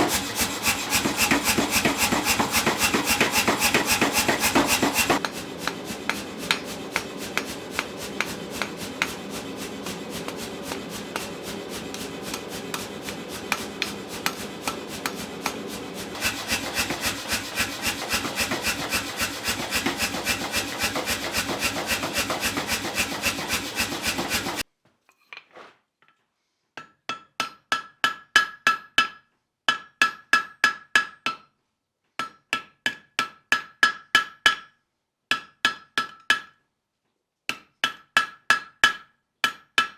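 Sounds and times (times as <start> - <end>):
hammer striking steel on anvil: 0.0 - 24.6
metal scraping: 0.0 - 24.6.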